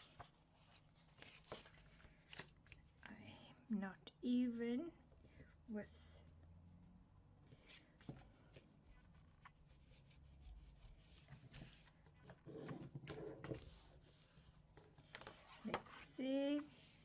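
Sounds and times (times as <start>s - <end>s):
paper rustling and sliding: 0.0s - 2.8s, 7.6s - 15.9s.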